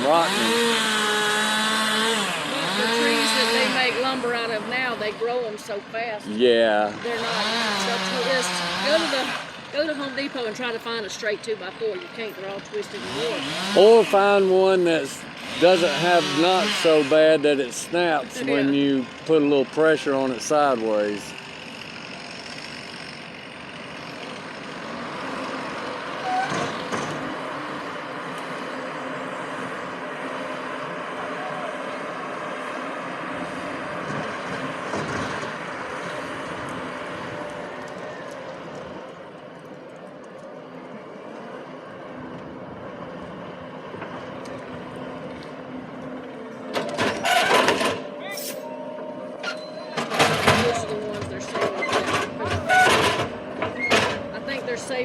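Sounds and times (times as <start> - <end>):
heavy vehicle engine running: 0.0 - 55.0
short squeak: 26.2 - 26.8, 47.0 - 50.4, 51.7 - 54.3.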